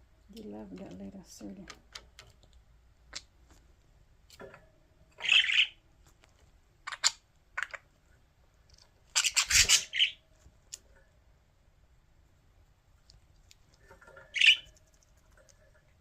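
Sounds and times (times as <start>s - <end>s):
budgerigars squawking: 5.2s - 5.8s, 9.2s - 10.2s, 14.4s - 14.7s.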